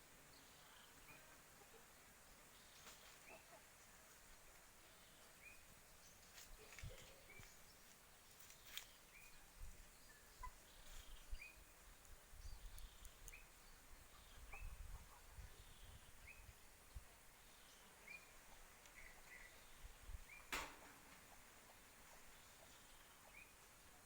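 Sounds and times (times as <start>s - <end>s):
bird chirping: 4.8s - 24.0s.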